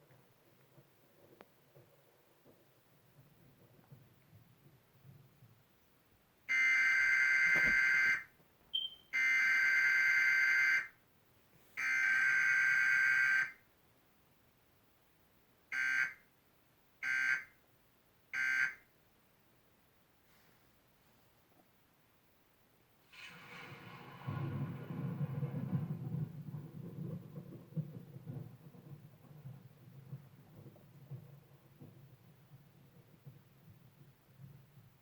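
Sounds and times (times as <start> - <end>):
emergency alert data tones: 6.5 - 8.2.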